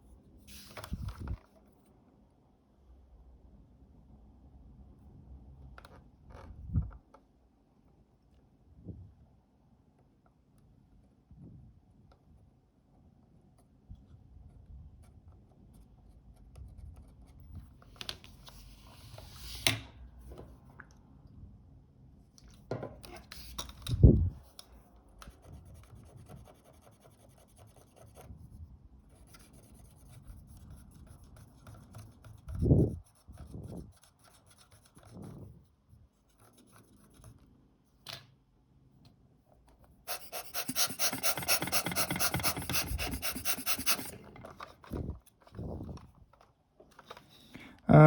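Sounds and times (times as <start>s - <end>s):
rapid scrubbing on small parts: 40.1s - 44.2s
light scratching: 40.1s - 44.5s.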